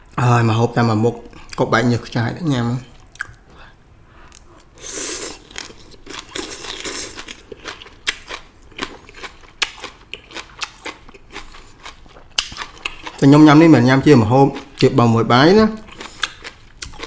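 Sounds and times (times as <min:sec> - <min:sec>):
crunchy chewing: 0:04.3 - 0:13.3, 0:15.8 - 0:17.0.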